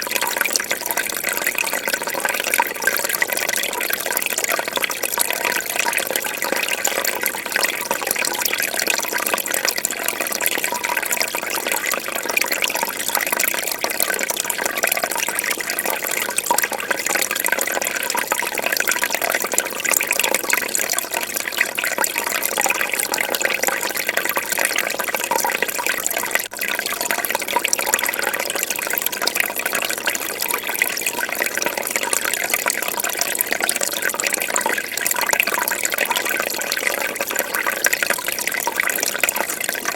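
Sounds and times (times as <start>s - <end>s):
fish tank water bubbling: 0.0s - 39.9s.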